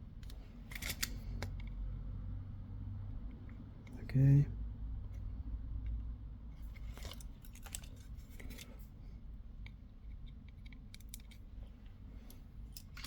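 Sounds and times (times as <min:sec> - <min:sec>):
small tool clicks and scrapes: 0:00.2 - 0:01.8, 0:06.6 - 0:08.9, 0:09.6 - 0:11.5.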